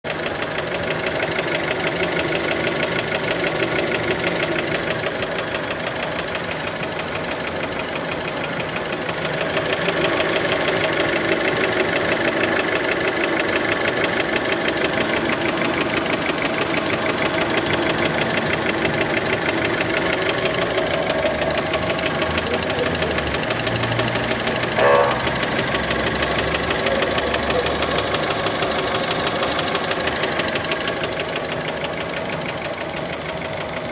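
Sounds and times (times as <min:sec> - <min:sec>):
car engine knocking: 0:00.0 - 0:33.9
brief loud sound: 0:24.8 - 0:25.4.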